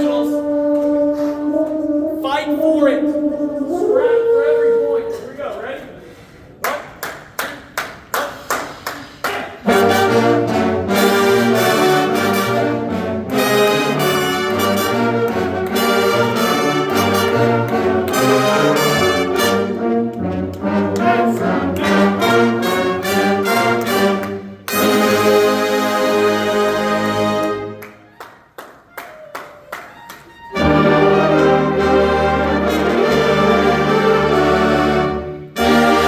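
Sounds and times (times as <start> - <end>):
marching band brass playing: 0.0 - 5.2, 9.5 - 28.1, 29.9 - 36.0.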